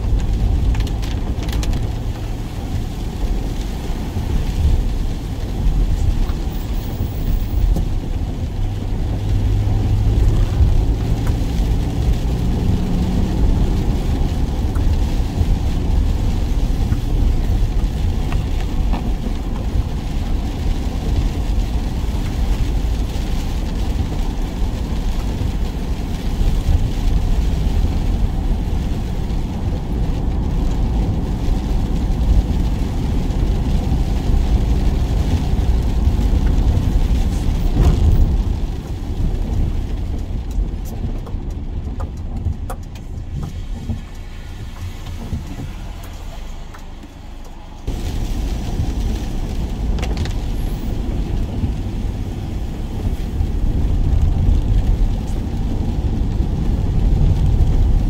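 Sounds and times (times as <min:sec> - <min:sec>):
van engine running: 0:00.0 - 0:31.4
road rumble: 0:00.0 - 0:58.0.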